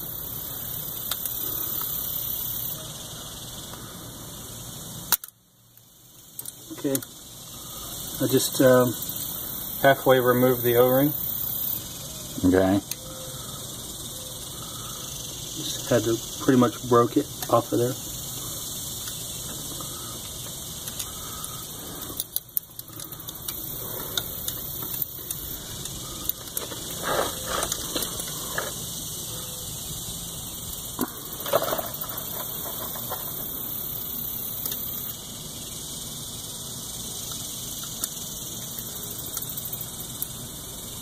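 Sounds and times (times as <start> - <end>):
steady hiss: 0.0 - 41.0
faint clicks: 18.3 - 26.9.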